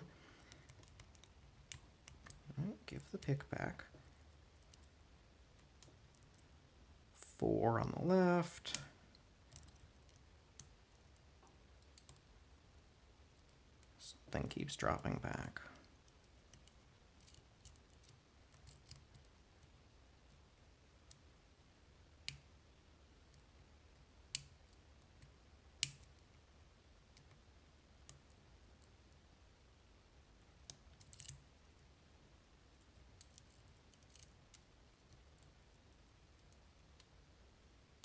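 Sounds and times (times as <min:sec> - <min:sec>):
lock picking metallic clicks: 0:30.7 - 0:31.4.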